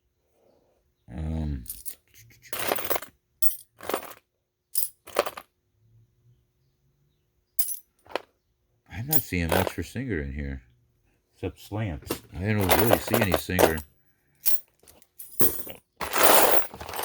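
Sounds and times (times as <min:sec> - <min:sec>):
metal pieces clinking: 0:01.7 - 0:04.2, 0:04.8 - 0:05.4, 0:07.6 - 0:08.2, 0:09.1 - 0:09.8, 0:12.1 - 0:13.8, 0:14.4 - 0:17.0.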